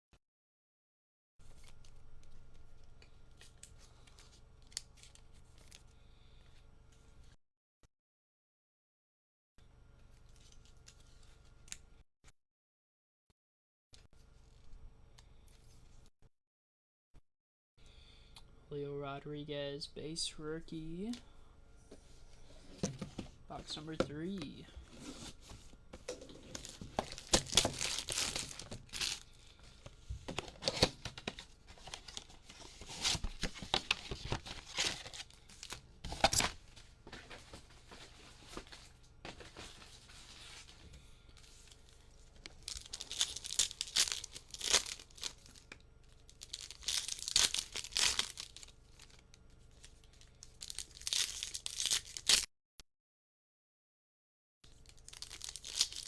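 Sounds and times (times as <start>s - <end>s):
packaging ripping and crinkling: 26.0s - 40.8s, 41.4s - 52.5s, 54.7s - 56.0s.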